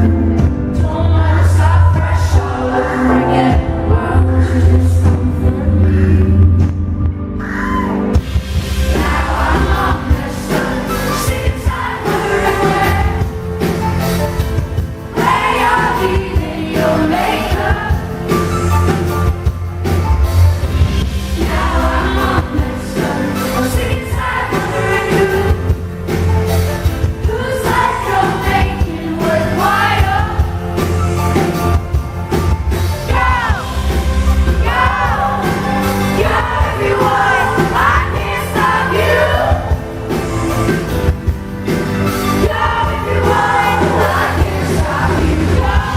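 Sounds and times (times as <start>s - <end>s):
live pop-rock band: 0.0s - 45.9s
woman singing: 0.6s - 6.2s.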